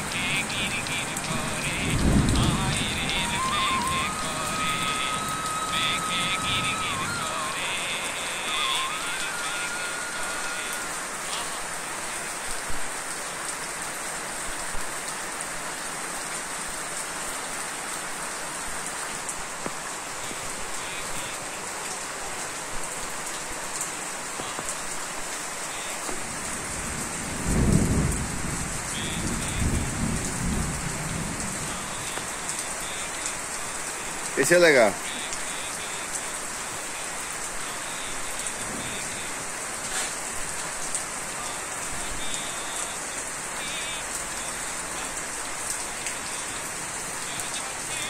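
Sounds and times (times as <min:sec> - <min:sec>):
thunder rumbling: 0:00.0 - 0:07.0, 0:26.2 - 0:32.8
heavy rain: 0:00.0 - 0:48.0.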